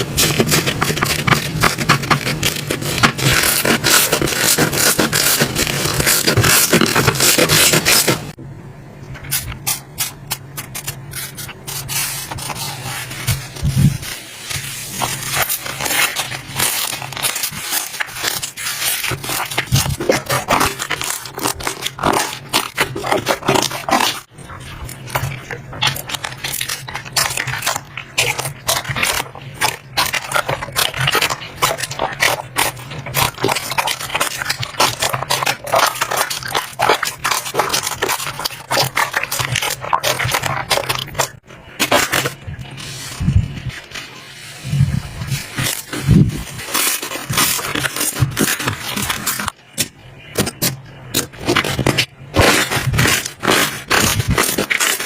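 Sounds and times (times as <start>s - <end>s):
slime crackling and popping: 12.0s - 42.4s, 45.3s - 55.0s.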